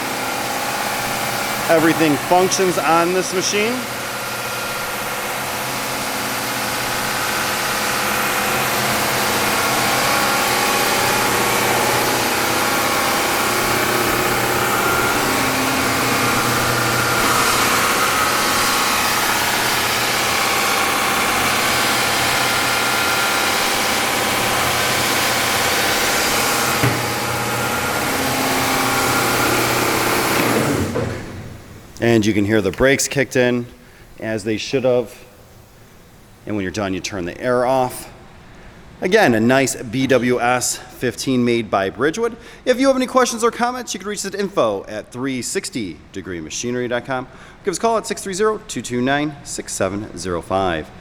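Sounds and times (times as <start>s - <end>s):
belt sander machine hum: 0.0s - 40.6s.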